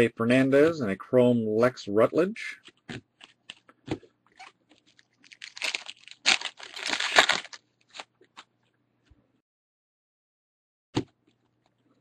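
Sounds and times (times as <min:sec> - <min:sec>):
card pack wrapper crinkling: 0:02.6 - 0:03.7, 0:04.4 - 0:08.5.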